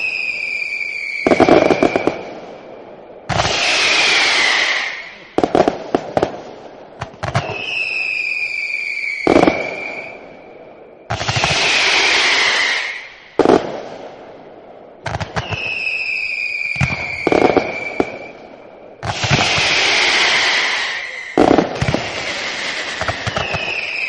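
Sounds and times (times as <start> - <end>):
descending firework whistle: 0.0 - 5.4, 7.2 - 13.9, 15.1 - 24.0
firework bangs: 0.0 - 24.0
firework hissing showers: 3.3 - 5.2, 11.2 - 13.3, 19.0 - 24.0.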